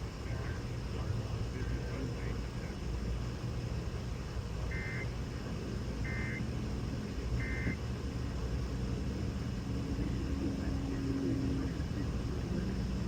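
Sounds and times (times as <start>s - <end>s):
radio hiss: 0.1s - 3.4s, 4.2s - 7.9s, 9.9s - 13.0s.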